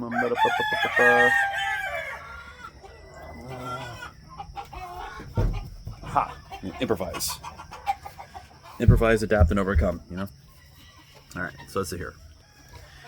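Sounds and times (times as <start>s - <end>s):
rooster crowing: 0.0s - 5.5s, 12.3s - 13.0s
chickens clucking: 0.0s - 13.0s
low bump: 8.8s - 10.1s.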